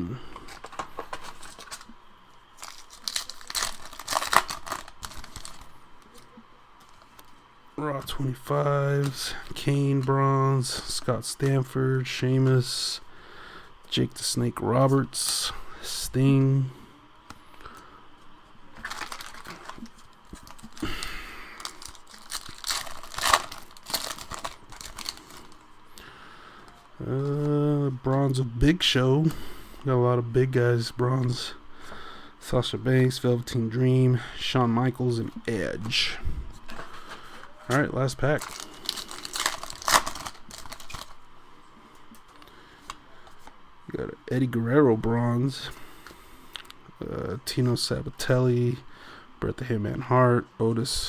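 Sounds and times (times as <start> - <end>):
cards being handled: 0.4 - 1.9, 2.6 - 7.4, 18.8 - 25.7, 36.6 - 41.2
foil wrapper tearing and crinkling: 2.6 - 5.7, 18.8 - 25.6, 38.3 - 41.2.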